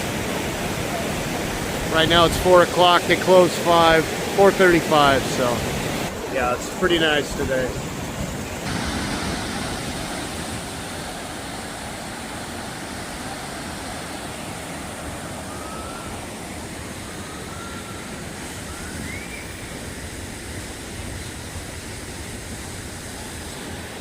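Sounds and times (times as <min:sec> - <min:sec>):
waterfall rushing: 0:00.0 - 0:24.0
faint rising chirps: 0:17.0 - 0:20.1.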